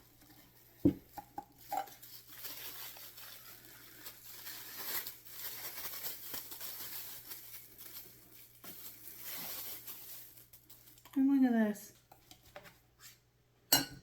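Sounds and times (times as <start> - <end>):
packaging rustling and crinkling: 0.2 - 11.2.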